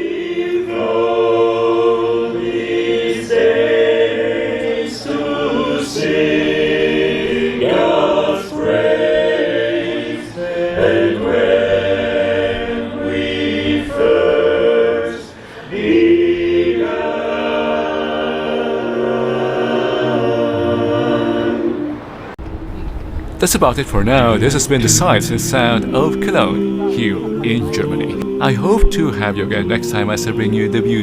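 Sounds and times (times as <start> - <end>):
choir singing a cappella: 0.0 - 22.4, 24.0 - 31.0.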